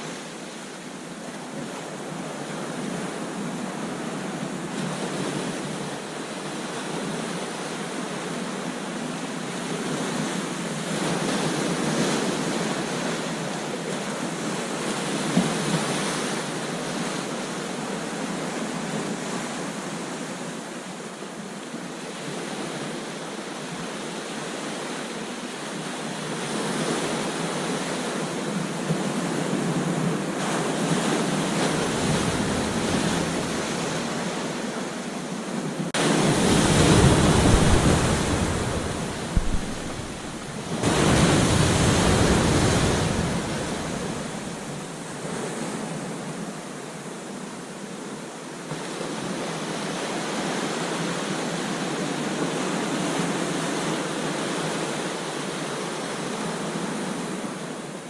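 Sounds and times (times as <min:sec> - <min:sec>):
ocean surf breaking: 0:26.4 - 0:46.4
wind on microphone: 0:28.5 - 0:45.0.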